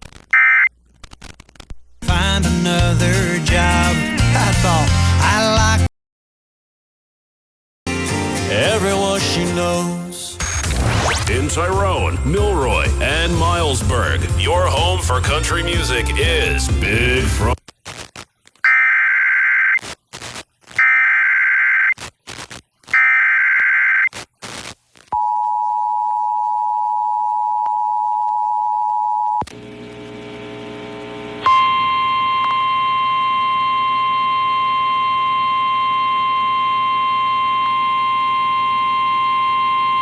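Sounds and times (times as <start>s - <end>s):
screeching digital bursts: 18.6s - 19.9s, 20.8s - 22.0s
single steady tone: 31.4s - 40.0s
two-tone attention signal: 31.4s - 40.0s.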